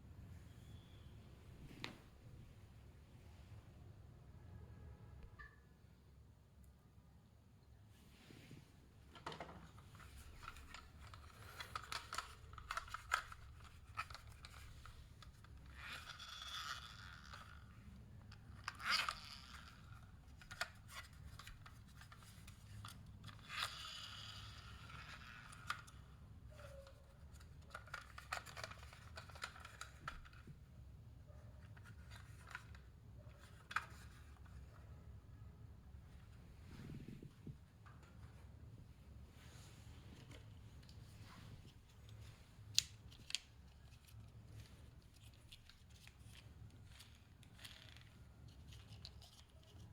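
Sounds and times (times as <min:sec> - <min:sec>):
handling clicks and scrapes: 0:09.2 - 0:30.5, 0:31.3 - 0:35.0.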